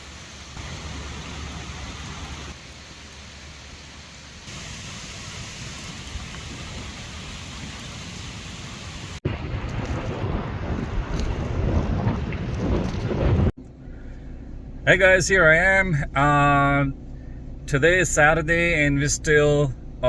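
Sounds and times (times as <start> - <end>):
steady rain falling: 0.0 - 13.5
wind buffeting microphone: 9.2 - 13.6.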